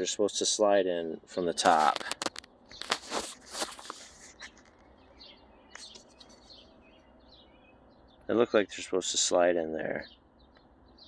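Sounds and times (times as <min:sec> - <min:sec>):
faint bird chirps: 0:02.6 - 0:09.0.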